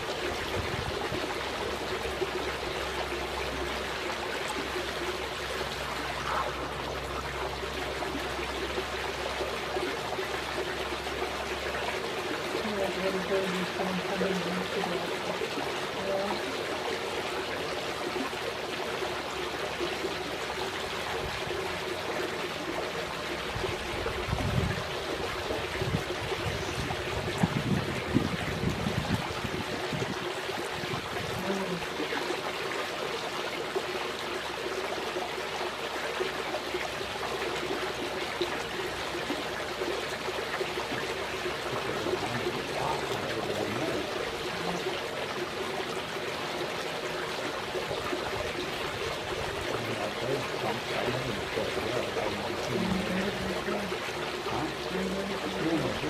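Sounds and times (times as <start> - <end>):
water trickling: 0.0 - 56.0.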